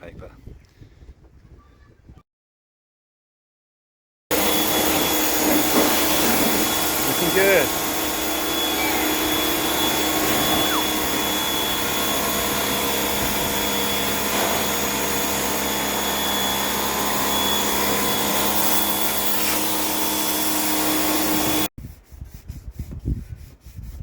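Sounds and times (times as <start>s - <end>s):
electric power tool motor running: 4.3s - 21.7s.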